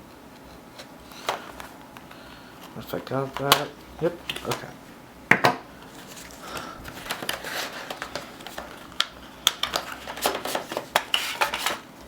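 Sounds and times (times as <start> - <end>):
packaging rustling: 0.6 - 4.8, 5.8 - 11.9.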